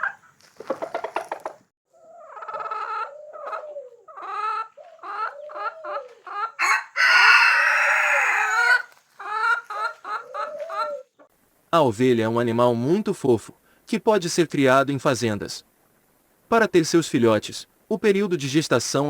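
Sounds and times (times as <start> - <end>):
chickens clucking: 0.0 - 11.3
rooster crowing loudly: 6.6 - 9.4.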